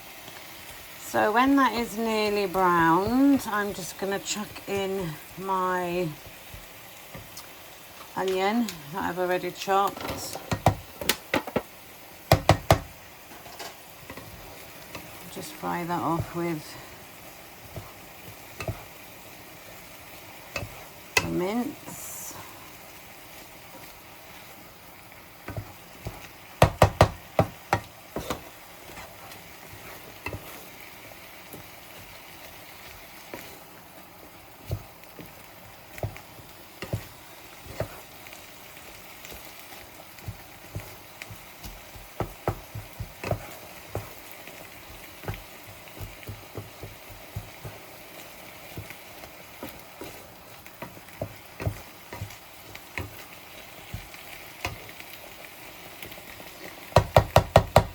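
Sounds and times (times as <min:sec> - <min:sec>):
meat sizzling in a frying pan: 0:00.0 - 0:57.9
utensil knocking against pan: 0:12.3 - 0:12.9, 0:26.6 - 0:28.4, 0:57.0 - 0:57.9.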